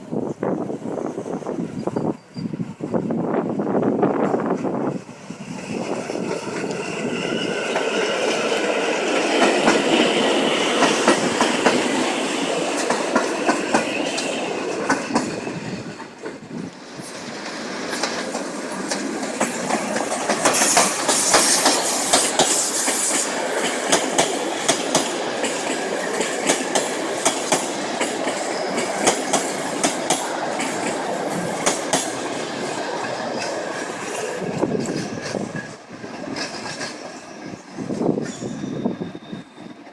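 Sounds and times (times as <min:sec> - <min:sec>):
train whine: 0:00.0 - 0:39.9
high wheel squeal: 0:01.0 - 0:02.6, 0:36.9 - 0:39.9
train wheels clacking over rails: 0:04.0 - 0:39.9.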